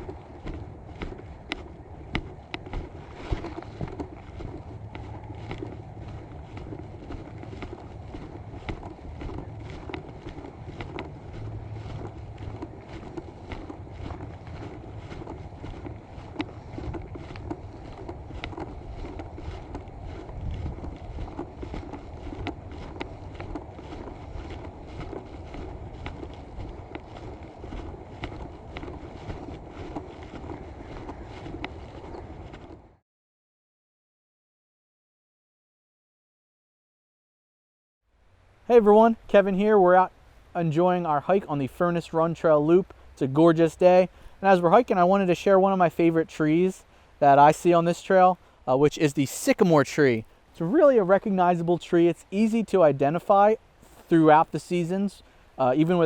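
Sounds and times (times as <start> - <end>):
footsteps on dirt trail: 0.0 - 33.0, 38.2 - 56.0
wind rumble on microphone: 0.0 - 33.0.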